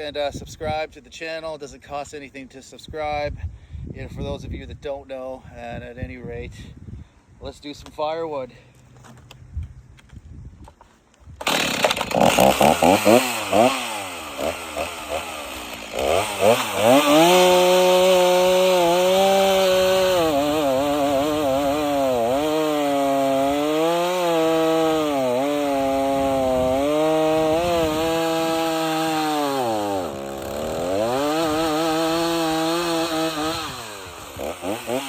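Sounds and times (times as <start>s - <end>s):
chainsaw cutting firewood: 11.4s - 35.0s.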